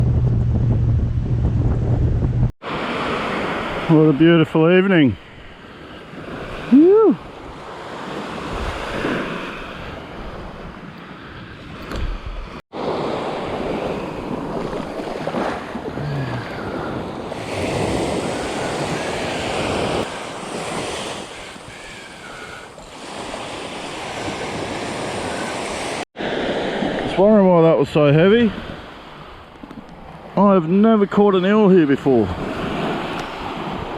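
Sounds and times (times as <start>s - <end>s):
wind buffeting microphone: 0.0s - 2.5s, 11.6s - 26.0s
ocean surf washing onto beach: 2.6s - 33.9s.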